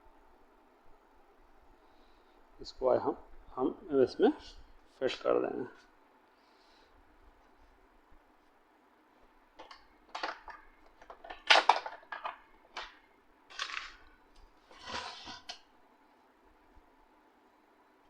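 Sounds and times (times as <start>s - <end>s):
clicks and metallic clatters: 9.6s - 15.7s.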